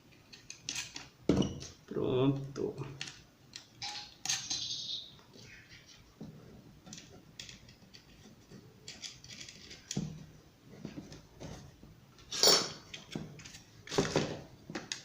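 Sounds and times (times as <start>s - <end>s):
small hardware clicking and scraping: 6.8s - 10.0s.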